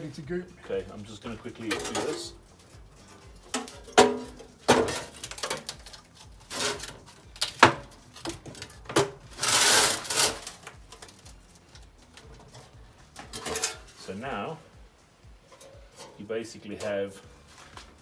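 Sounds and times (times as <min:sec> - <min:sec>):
metal scraping rub: 0:00.0 - 0:14.8, 0:15.4 - 0:18.0
sheet metal knocks and clanks: 0:01.4 - 0:14.1.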